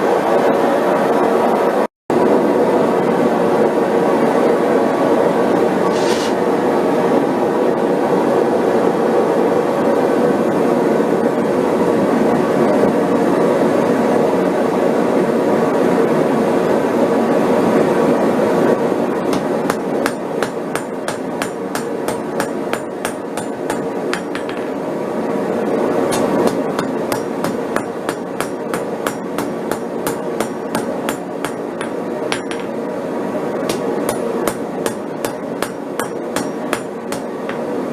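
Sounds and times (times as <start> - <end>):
forge burner rushing: 18.8 - 37.9
hammer striking steel on anvil: 19.3 - 24.8, 26.1 - 32.8, 33.7 - 37.8.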